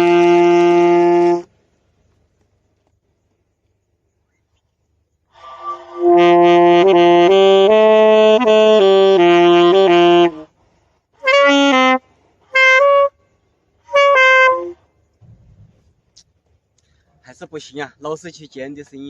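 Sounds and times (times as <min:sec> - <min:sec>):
saxophone held notes: 0:00.0 - 0:01.5, 0:05.4 - 0:10.5, 0:11.2 - 0:13.2, 0:13.9 - 0:14.8.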